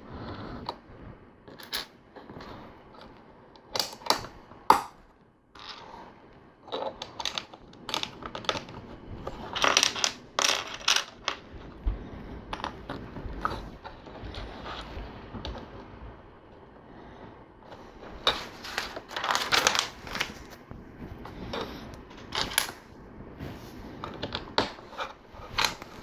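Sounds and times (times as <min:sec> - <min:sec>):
plastic pieces clicking and rattling: 0:06.7 - 0:11.5, 0:18.2 - 0:20.6, 0:21.6 - 0:22.8.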